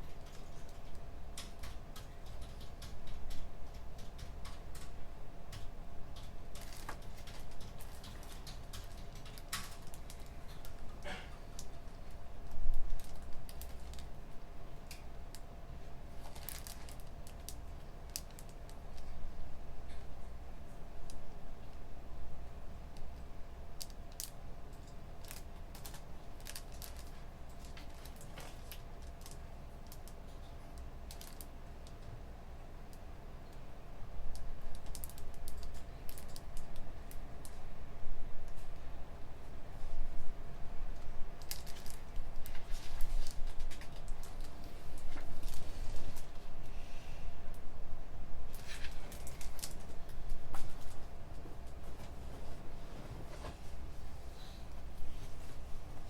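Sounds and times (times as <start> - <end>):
keyboard typing: 0.0 - 11.0
low room hum: 0.0 - 56.0.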